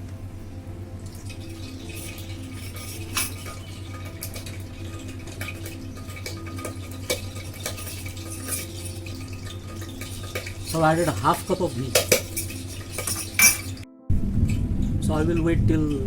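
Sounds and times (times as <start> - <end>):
ghee sizzling: 0.0 - 14.7
spoon clinking against metal pan: 1.2 - 13.8.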